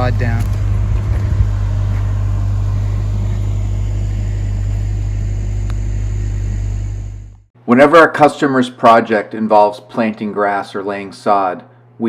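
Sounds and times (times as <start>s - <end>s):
stump grinder engine running: 0.0s - 7.4s.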